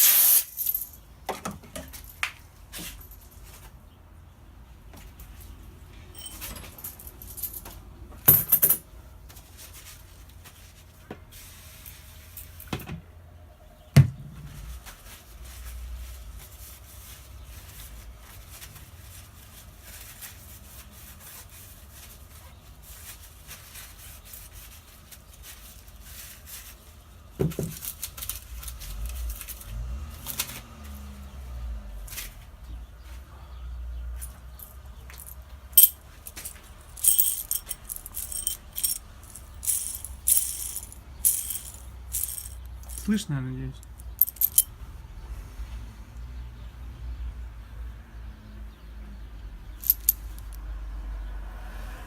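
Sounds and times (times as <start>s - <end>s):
rustling and handling noise: 0.0s - 3.8s, 6.1s - 12.7s, 34.2s - 44.7s, 49.8s - 50.6s
knocks and clanks of metal tools: 34.6s - 43.1s.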